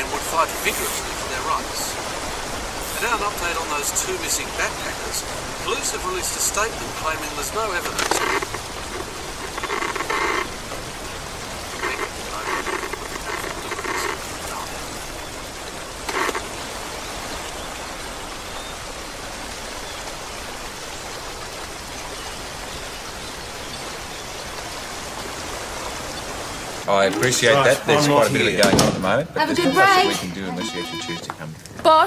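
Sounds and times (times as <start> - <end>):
rushing water: 0.0 - 32.0
faint indistinct speech: 29.4 - 31.5.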